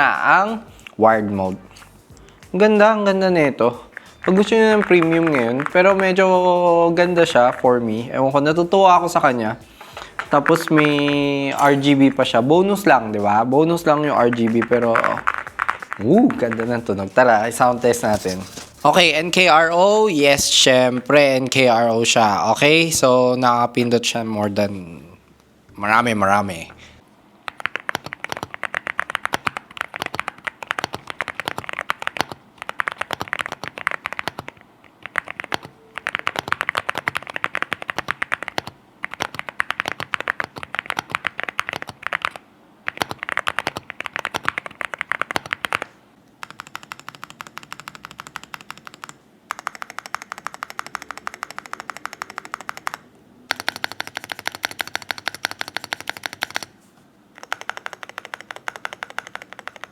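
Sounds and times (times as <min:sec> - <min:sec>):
fast typing on mechanical keyboard: 0:03.7 - 0:08.0, 0:10.0 - 0:12.2, 0:14.0 - 0:18.6, 0:27.5 - 0:56.7, 0:57.4 - 0:59.9.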